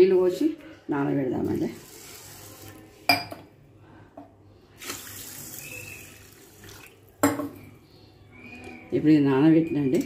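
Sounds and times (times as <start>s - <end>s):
water pouring: 1.4s - 3.0s, 4.8s - 7.2s.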